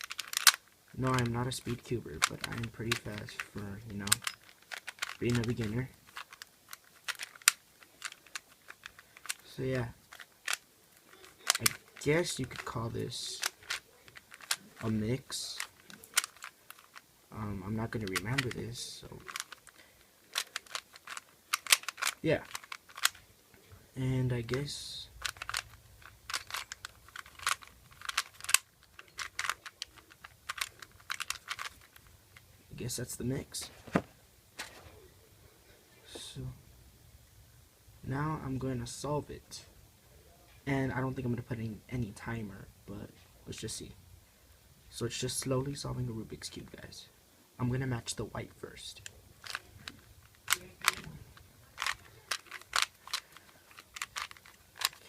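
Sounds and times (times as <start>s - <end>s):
puzzle cube layers clicking: 0.0s - 23.2s, 24.4s - 32.5s, 49.0s - 55.0s.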